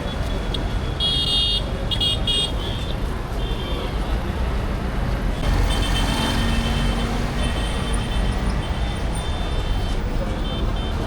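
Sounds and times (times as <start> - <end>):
street traffic rumble: 0.0 - 11.0.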